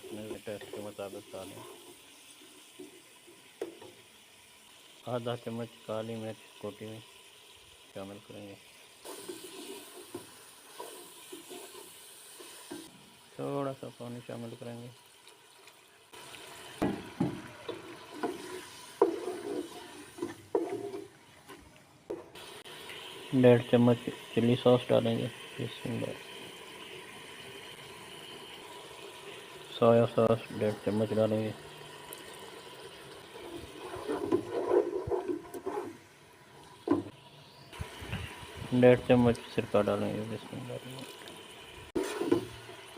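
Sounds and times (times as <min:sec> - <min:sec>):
faint sizzle: 0:00.0 - 0:42.9
wet bubbling in a pan: 0:14.5 - 0:21.4, 0:22.3 - 0:42.9.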